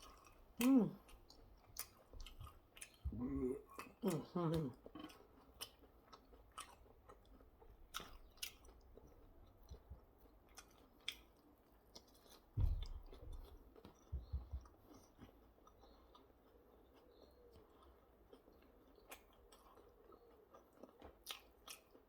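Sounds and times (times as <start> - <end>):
chewing food: 0.0 - 22.0
dull low bumps: 12.6 - 14.7.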